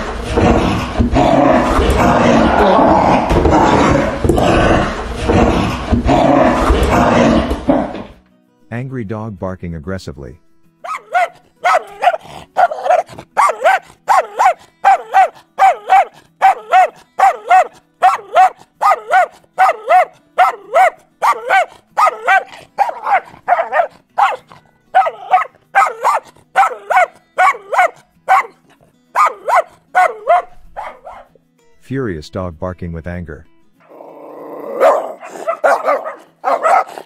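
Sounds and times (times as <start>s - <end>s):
dog barking aggressively: 10.8s - 31.4s, 34.8s - 37.0s.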